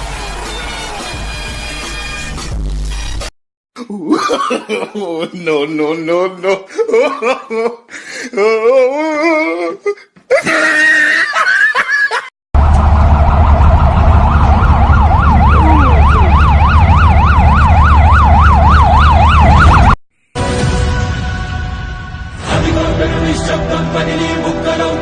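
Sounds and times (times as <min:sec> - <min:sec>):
person speaking: 0:03.8 - 0:07.6, 0:15.5 - 0:16.5
loud distorted rumble: 0:12.6 - 0:16.5
police siren yelping: 0:12.6 - 0:20.0.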